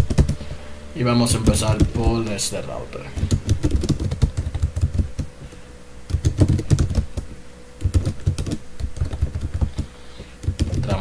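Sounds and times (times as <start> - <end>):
computer keyboard typing: 0.0 - 0.4, 1.3 - 2.2, 3.2 - 5.3, 6.1 - 11.0.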